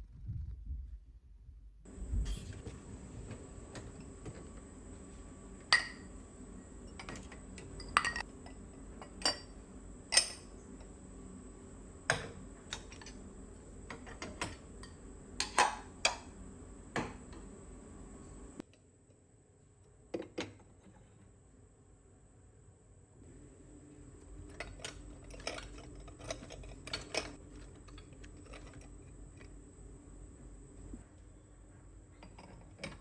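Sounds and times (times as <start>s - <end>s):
faint high-pitched hum: 1.9s - 33.0s
dishes and utensils clinking: 5.7s - 6.1s, 6.8s - 9.5s.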